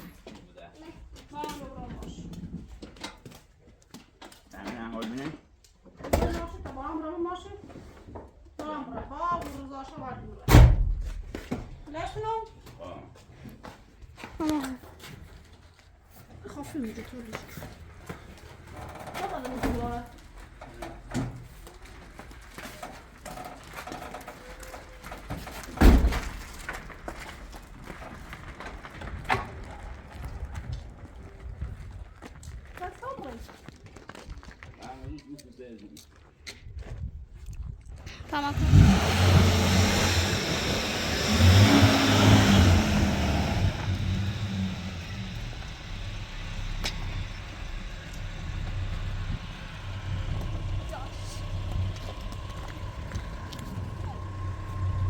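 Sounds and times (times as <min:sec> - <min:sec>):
loud heavy thump: 0:10.5 - 0:11.8
vehicle engine running: 0:38.3 - 0:55.0.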